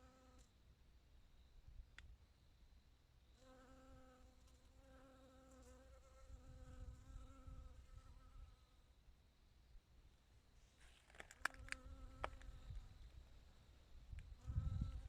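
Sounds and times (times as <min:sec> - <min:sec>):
bee buzzing in flight: 0:03.4 - 0:08.5, 0:11.6 - 0:13.0, 0:14.3 - 0:15.0.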